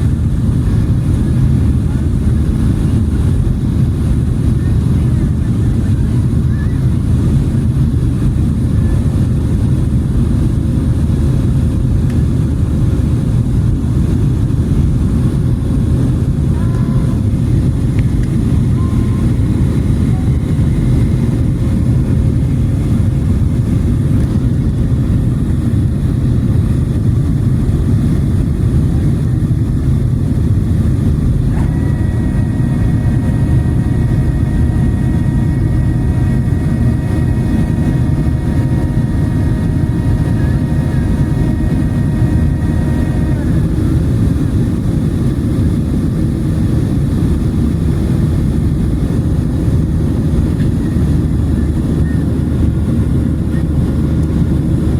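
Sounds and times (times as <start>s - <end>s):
airliner cabin roar: 0.0s - 54.9s
multi-tone electronic hum: 14.7s - 45.6s.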